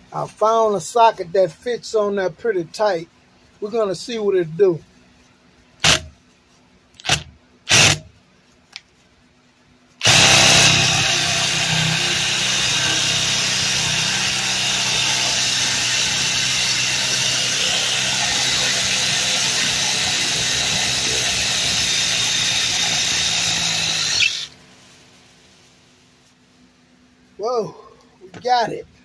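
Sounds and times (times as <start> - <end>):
power drill running: 5.8 - 6.0, 7.0 - 8.1, 10.0 - 24.6.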